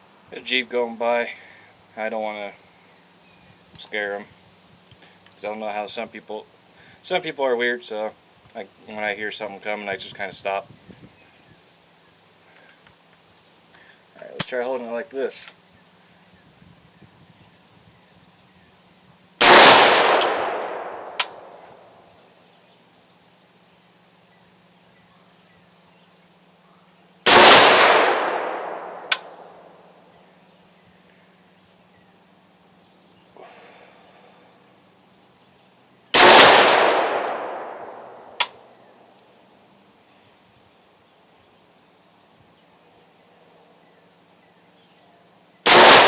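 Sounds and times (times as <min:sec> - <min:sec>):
rifle shots: 0:19.4 - 0:21.6, 0:27.3 - 0:29.6, 0:36.1 - 0:38.5, 0:45.7 - 0:46.0
sharp click: 0:20.2 - 0:21.8, 0:28.0 - 0:29.4, 0:38.4 - 0:38.6.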